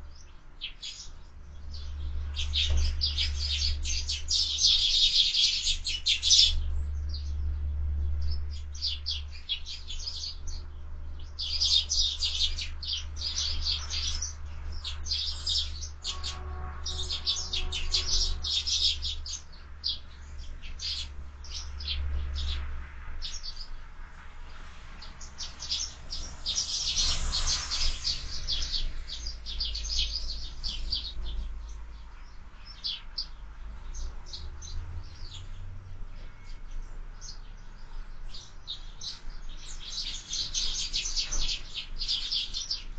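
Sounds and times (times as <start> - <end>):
steady low rumble: 0.0 - 16.1
sparrows chirping: 0.0 - 42.9.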